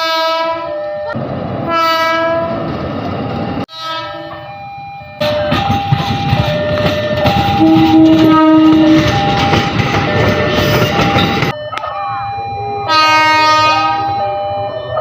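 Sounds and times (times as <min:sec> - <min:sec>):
train horn notes alternating: 0:00.0 - 0:00.8, 0:01.6 - 0:02.6, 0:03.7 - 0:04.5, 0:07.4 - 0:09.4, 0:12.7 - 0:14.2
train rumbling on rails: 0:00.0 - 0:15.0.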